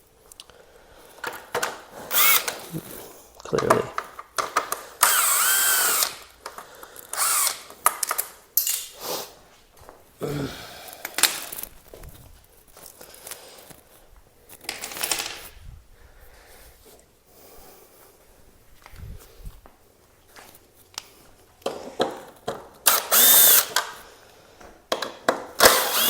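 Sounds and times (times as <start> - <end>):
power drill whining: 2.0 - 2.8, 5.0 - 6.3, 7.1 - 7.7, 22.8 - 24.0, 25.6 - 26.0.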